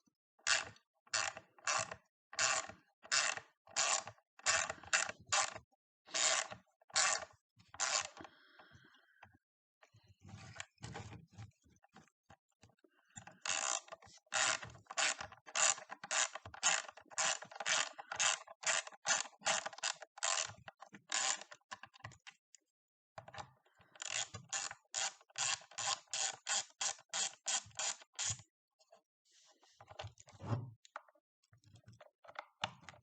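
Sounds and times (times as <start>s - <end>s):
hand ratchet clicking: 13.5s - 20.5s, 24.0s - 28.4s.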